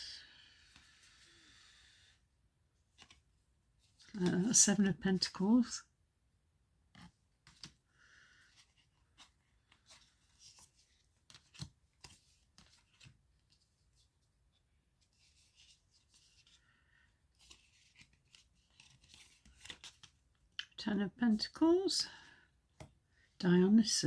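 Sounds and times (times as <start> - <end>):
cards clicking and rustling: 7.0 - 7.8, 8.4 - 13.6, 17.4 - 20.2.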